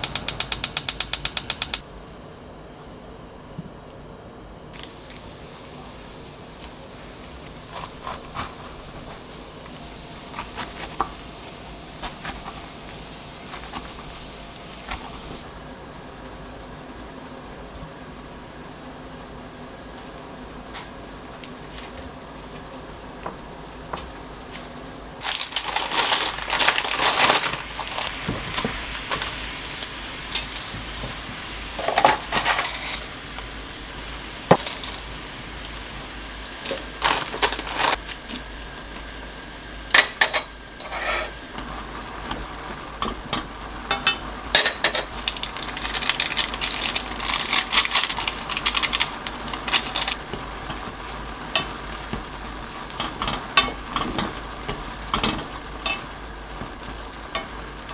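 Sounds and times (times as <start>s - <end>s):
food sizzling in a frying pan: 4.8s - 18.4s, 25.2s - 57.9s
utensil scraping a pan: 31.8s - 33.2s, 40.8s - 41.5s.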